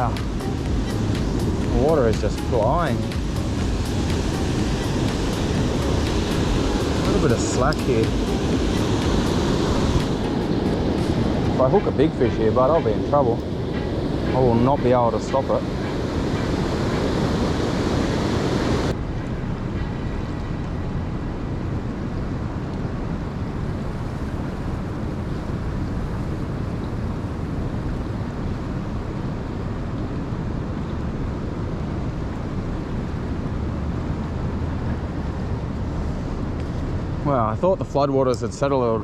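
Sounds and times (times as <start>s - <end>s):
floodwater rushing in river: 0.0s - 18.9s.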